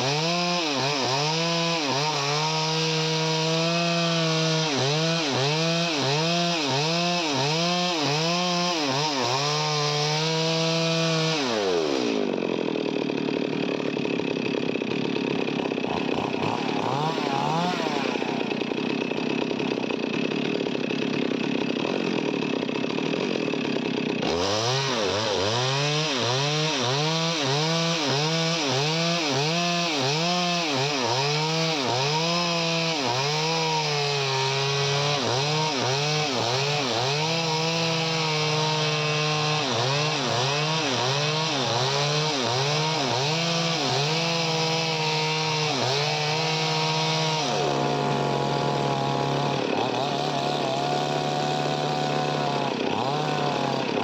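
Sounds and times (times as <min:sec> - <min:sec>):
chainsaw engine revving: 0:00.0 - 0:54.0.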